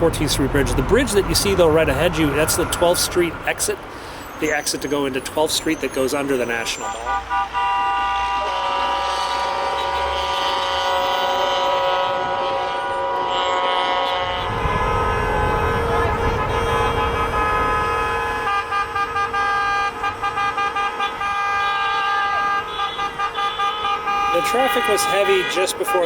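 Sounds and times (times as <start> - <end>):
truck and car horns blaring: 0.0 - 26.0
short rapid horn blasts: 6.8 - 26.0.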